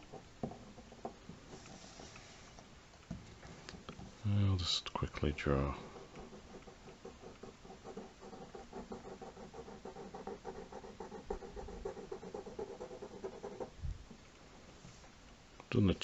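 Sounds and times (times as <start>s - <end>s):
drawing tool scratching on paper: 5.6s - 13.7s.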